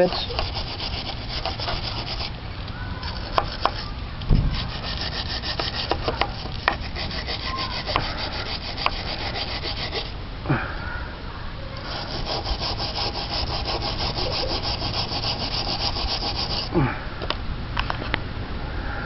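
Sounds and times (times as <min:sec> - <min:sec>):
wire brush scrubbing metal: 0:00.0 - 0:02.4, 0:03.0 - 0:10.2, 0:11.8 - 0:16.8.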